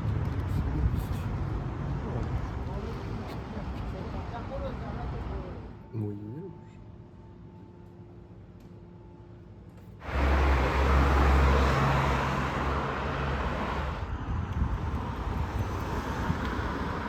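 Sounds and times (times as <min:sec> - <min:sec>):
vehicle engine rumble: 0:00.0 - 0:05.7, 0:10.0 - 0:17.0
road or wind noise: 0:00.0 - 0:05.8, 0:10.0 - 0:17.0.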